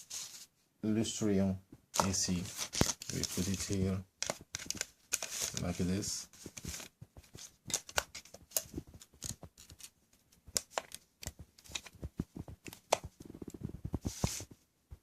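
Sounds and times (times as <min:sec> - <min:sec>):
plastic adapter clicks and taps: 0:10.5 - 0:12.0.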